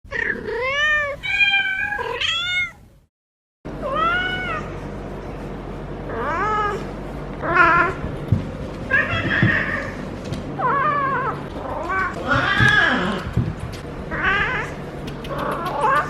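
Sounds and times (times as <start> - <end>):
cat caterwauling: 0.1 - 2.8, 3.8 - 4.7, 6.1 - 6.8, 7.4 - 8.0, 10.6 - 16.0.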